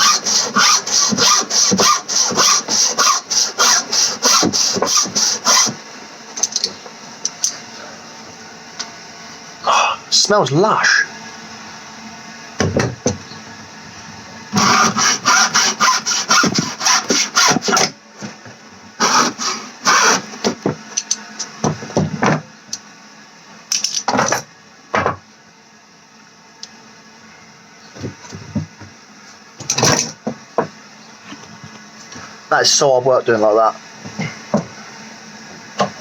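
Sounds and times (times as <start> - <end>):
hacksaw sawing: 0.0 - 5.8, 14.5 - 17.9, 19.0 - 20.6.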